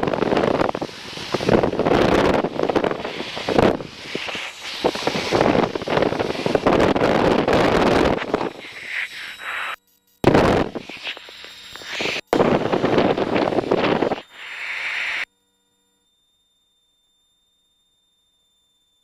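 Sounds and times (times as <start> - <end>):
aircraft cabin noise through headset: 0.0 - 9.8, 10.4 - 15.2.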